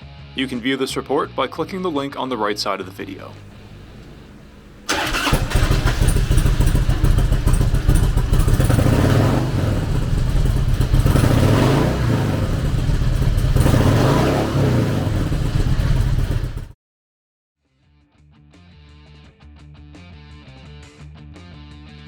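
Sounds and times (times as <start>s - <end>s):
motorcycle engine idling and revving: 3.3s - 16.8s.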